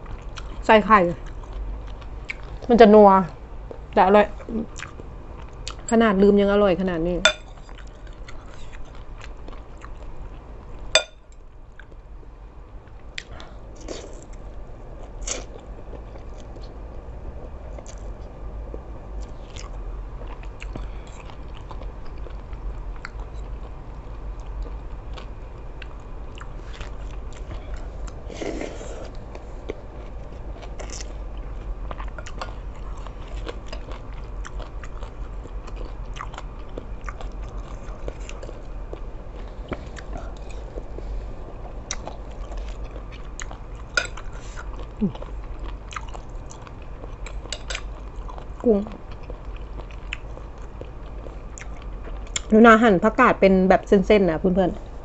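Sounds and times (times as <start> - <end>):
person chewing food: 0.0 - 0.6, 1.2 - 2.7, 4.7 - 5.9, 7.3 - 12.2, 12.8 - 52.5
low hum: 0.0 - 55.0.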